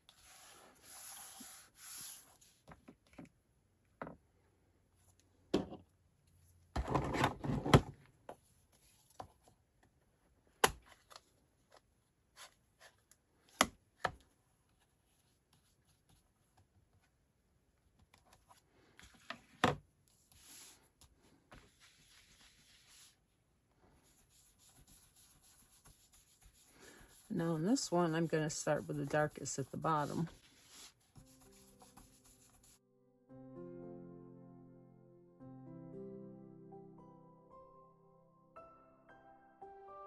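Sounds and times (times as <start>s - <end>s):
brush scrubbing on cardstock: 0.1s - 2.5s, 21.6s - 23.2s, 24.0s - 32.8s.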